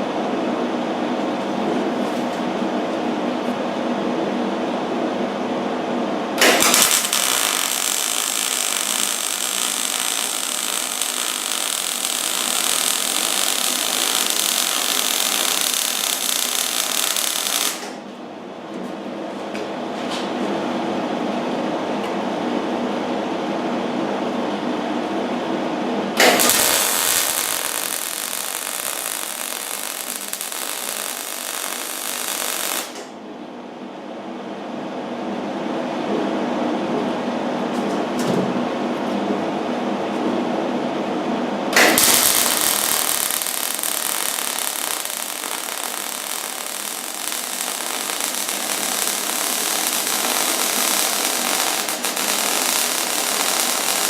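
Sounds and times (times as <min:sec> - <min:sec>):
welder arc crackling and hissing: 0:06.4 - 0:18.0, 0:26.2 - 0:33.2, 0:41.7 - 0:54.0.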